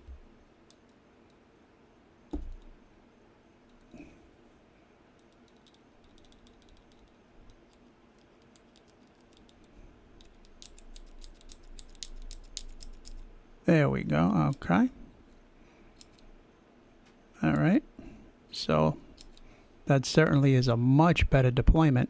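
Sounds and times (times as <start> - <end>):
soft knock: 2.3 - 2.6
mechanical pencil clicks: 10.2 - 13.2.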